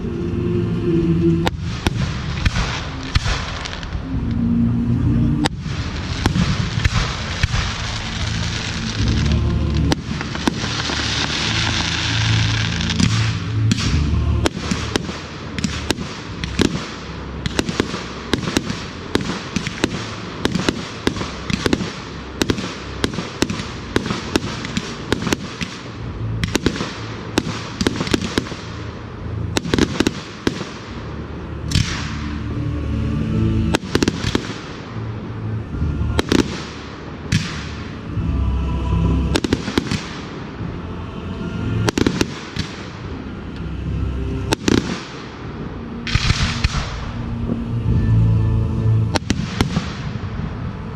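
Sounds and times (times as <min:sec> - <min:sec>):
fireworks bangs: 0:01.2 - 0:04.1, 0:05.4 - 0:32.4, 0:33.7 - 0:35.5, 0:36.1 - 0:38.2, 0:39.2 - 0:40.7, 0:41.7 - 0:43.2, 0:44.3 - 0:47.6, 0:49.1 - 0:50.9
fireworks hissing: 0:05.4 - 0:31.0.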